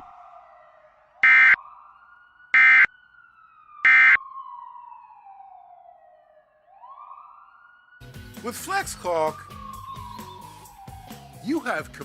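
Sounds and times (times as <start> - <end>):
faint siren wailing: 0.0 - 11.8.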